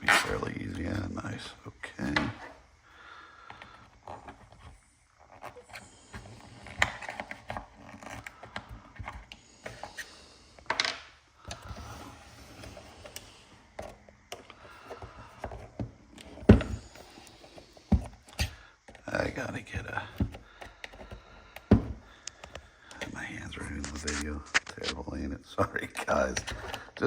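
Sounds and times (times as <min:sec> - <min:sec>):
hand tools clicking and scraping: 0:20.1 - 0:24.9.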